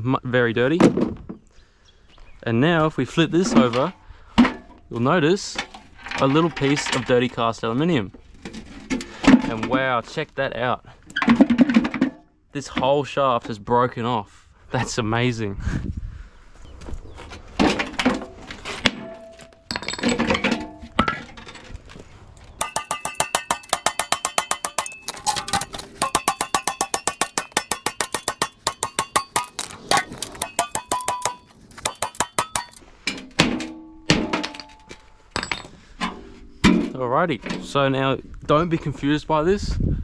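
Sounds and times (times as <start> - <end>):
metal parts knocking: 22.6 - 32.8
metallic clicks and clinks: 22.6 - 32.8.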